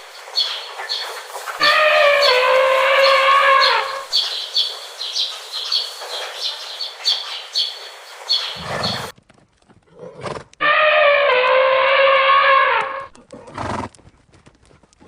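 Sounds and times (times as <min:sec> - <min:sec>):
high chirping calls: 0:00.0 - 0:09.1
long held animal call: 0:01.6 - 0:04.1, 0:10.6 - 0:13.2.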